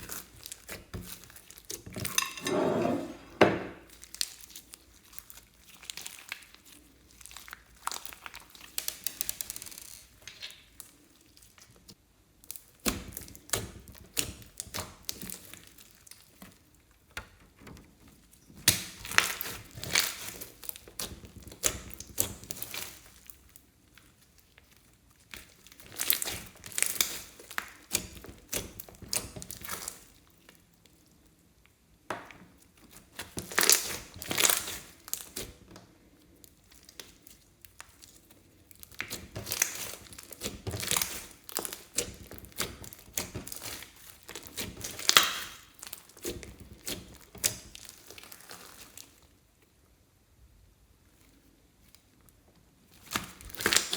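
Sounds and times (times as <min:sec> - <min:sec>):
slime clicking and popping: 0:38.8 - 0:48.9.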